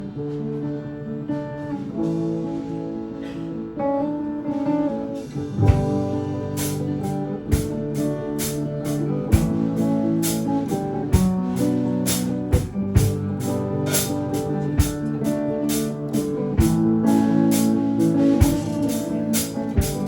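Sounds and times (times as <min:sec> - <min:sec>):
electric guitar chords: 0:00.0 - 0:20.0
drum kit thumps: 0:05.4 - 0:20.0.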